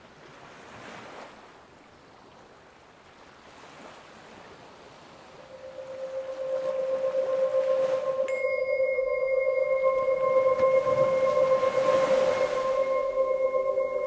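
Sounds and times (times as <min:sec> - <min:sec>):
steady pure tone: 0:05.4 - 0:14.0.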